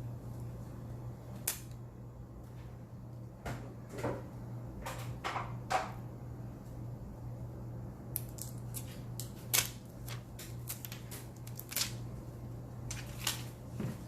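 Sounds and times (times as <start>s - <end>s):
steady low hum: 0.0s - 14.0s
paper and plastic crinkling: 8.4s - 12.0s, 12.9s - 14.0s.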